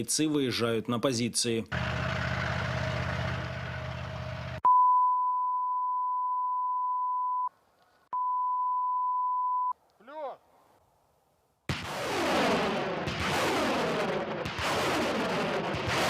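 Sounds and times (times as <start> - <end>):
vehicle engine with road noise: 1.7 - 4.6
electronic beep: 4.7 - 7.5.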